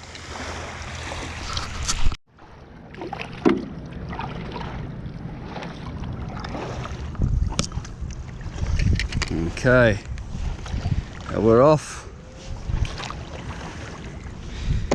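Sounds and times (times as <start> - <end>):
water lapping: 0.0 - 14.9
wind on microphone: 5.4 - 14.9.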